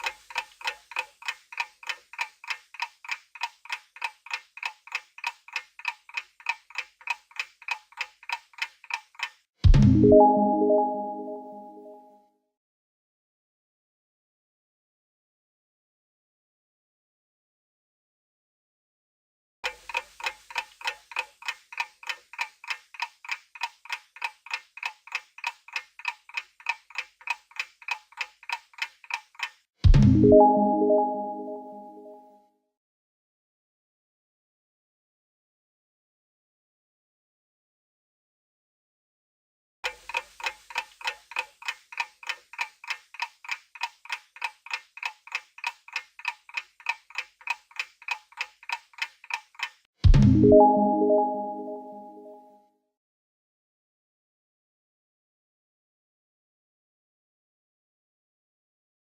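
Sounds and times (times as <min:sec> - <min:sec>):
clock ticking: 0:00.0 - 0:11.0, 0:19.6 - 0:29.7, 0:39.8 - 0:51.6.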